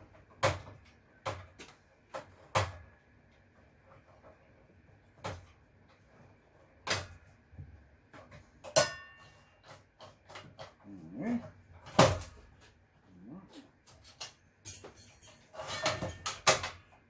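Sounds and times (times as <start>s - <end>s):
metallic ring: 8.8s - 9.5s
hard parts knocking and clunking: 13.9s - 17.0s.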